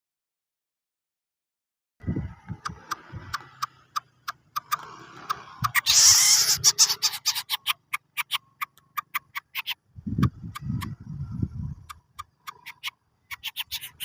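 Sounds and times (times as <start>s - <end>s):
bird clicking call: 2.5s - 11.0s, 11.8s - 14.0s.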